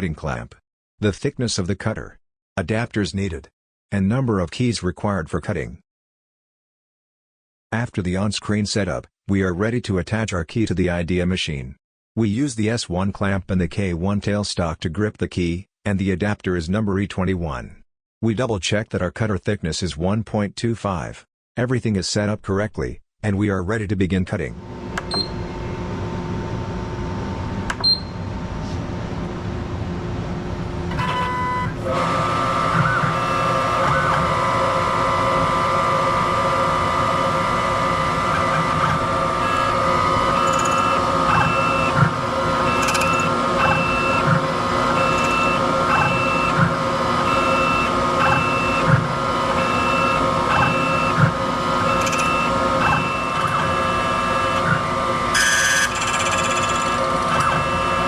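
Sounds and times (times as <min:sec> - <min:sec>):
key machine motor whine: 0:30.9 - 0:58.0.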